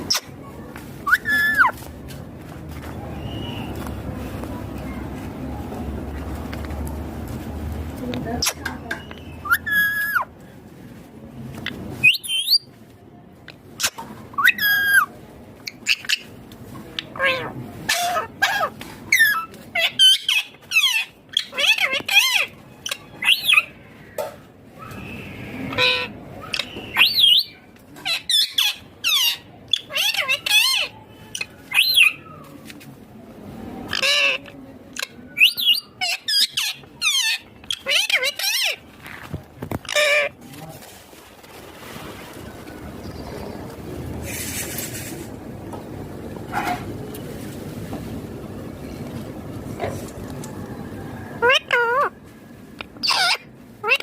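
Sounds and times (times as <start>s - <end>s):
parakeet high-pitched calls: 1.1s - 1.8s, 9.2s - 10.3s, 13.8s - 15.1s, 17.0s - 23.8s, 25.0s - 32.3s, 33.9s - 38.8s, 51.4s - 52.1s, 52.9s - 54.0s.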